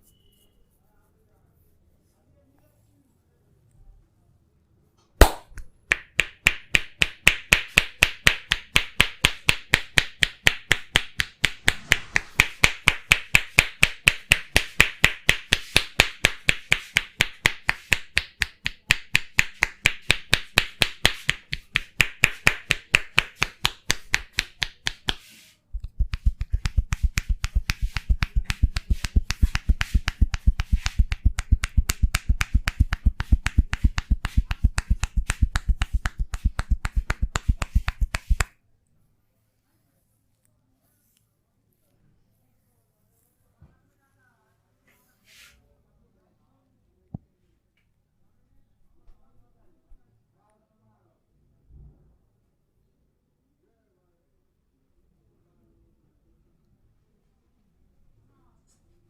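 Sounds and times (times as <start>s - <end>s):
hands slapping in massage: 5.2s - 38.6s.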